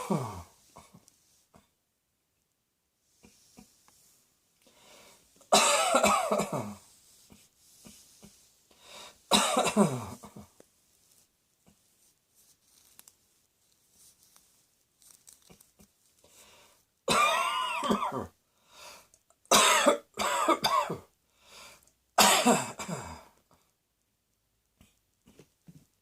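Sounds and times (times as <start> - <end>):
person coughing: 0.0 - 1.0, 5.5 - 6.8, 9.3 - 10.6, 17.1 - 18.4, 19.5 - 21.1, 22.2 - 23.4
quiet breaths: 0.0 - 1.9, 2.9 - 5.5, 6.4 - 9.3, 10.0 - 17.1, 18.3 - 19.5, 21.0 - 22.2, 22.9 - 24.0, 24.7 - 26.0.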